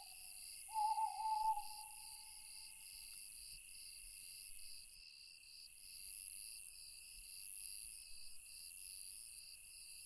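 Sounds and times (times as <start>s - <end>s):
crickets and night insects chirping: 0.0s - 10.0s
owl hooting: 0.7s - 2.4s.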